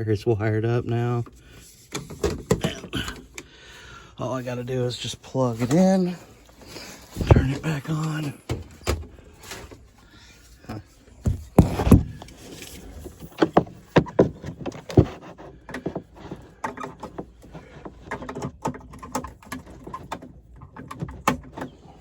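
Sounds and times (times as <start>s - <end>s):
rustling of cords: 0.6s - 22.0s
knocks and clicks of handling parts: 1.2s - 3.6s, 6.6s - 9.9s, 10.6s - 22.0s.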